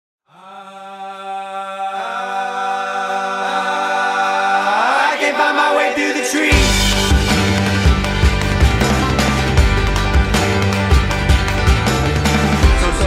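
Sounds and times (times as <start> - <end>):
choir-like held chord: 0.3 - 8.2.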